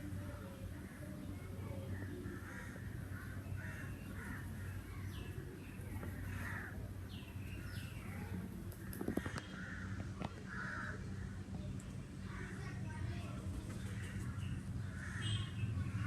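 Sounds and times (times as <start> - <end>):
crows cawing: 2.0 - 5.2, 6.0 - 6.9, 8.8 - 11.5, 14.8 - 16.0.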